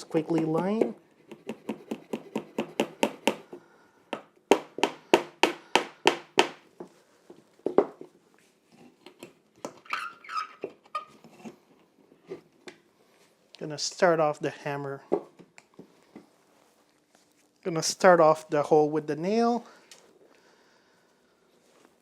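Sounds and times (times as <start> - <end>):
knocks and handling sounds: 6.4 - 13.3.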